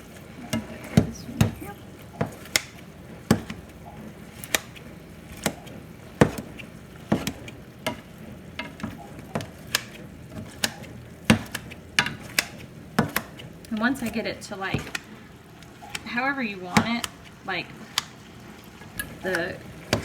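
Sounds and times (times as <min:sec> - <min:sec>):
chicken sizzling: 0:00.0 - 0:20.0
utensil knocking against frying pan: 0:00.4 - 0:18.3, 0:19.0 - 0:20.0.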